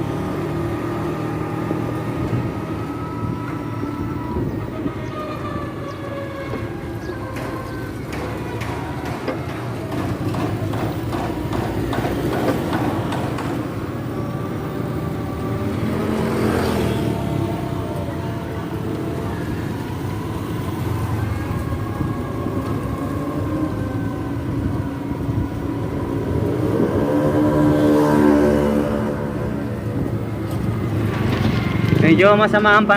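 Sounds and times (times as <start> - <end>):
vehicle passing: 0.0 - 32.9
wind on microphone: 1.6 - 8.1, 17.4 - 32.2.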